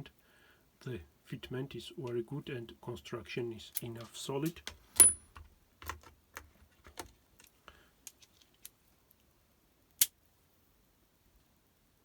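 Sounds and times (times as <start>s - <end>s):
metal bits clicking and tapping: 3.8s - 8.8s.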